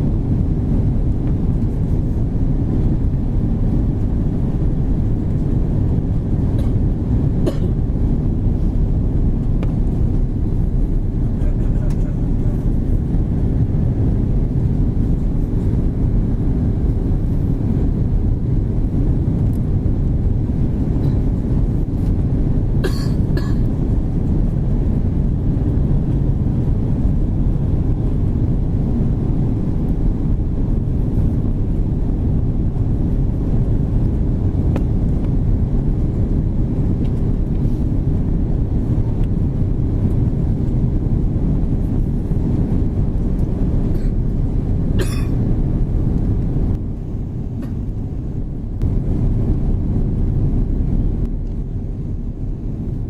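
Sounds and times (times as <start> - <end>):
aircraft cabin engine rumble: 0.0 - 53.0
constant low hum: 0.0 - 53.0.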